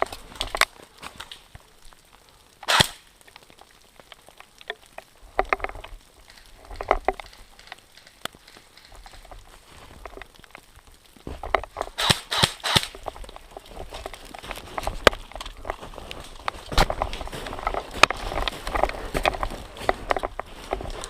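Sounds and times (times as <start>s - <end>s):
loud sharp crack: 2.6s - 3.1s, 12.0s - 13.0s.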